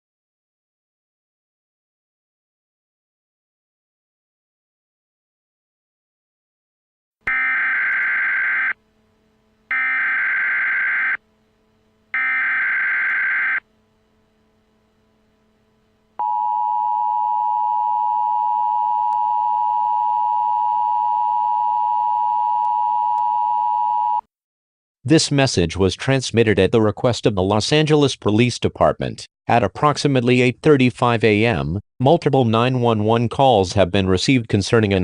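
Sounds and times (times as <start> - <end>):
warbling digital data tone: 12.2 - 13.6.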